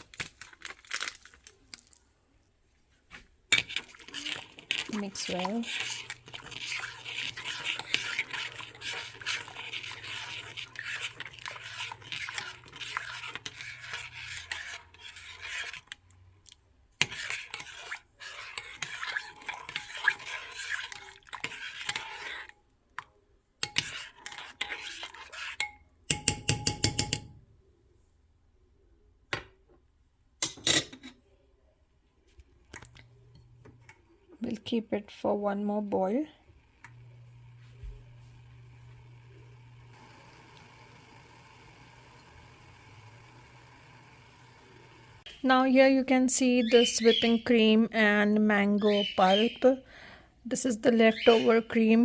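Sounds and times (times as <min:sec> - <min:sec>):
spoon scraping and clinking pot: 0:03.5 - 0:16.2, 0:17.0 - 0:22.6, 0:23.6 - 0:27.4, 0:30.4 - 0:31.2.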